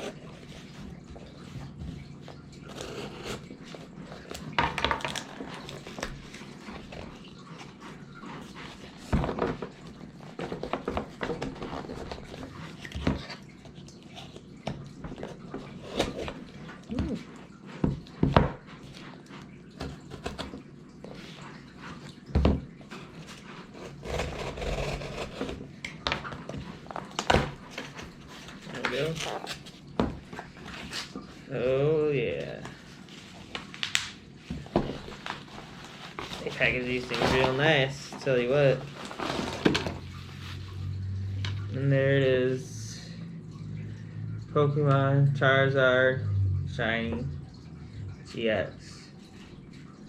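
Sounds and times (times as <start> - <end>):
wrapping rustling: 32.7 - 41.1.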